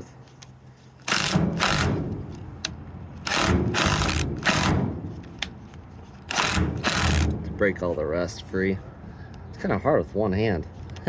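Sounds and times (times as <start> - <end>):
cordless drill on rusted bolt: 1.0 - 7.6.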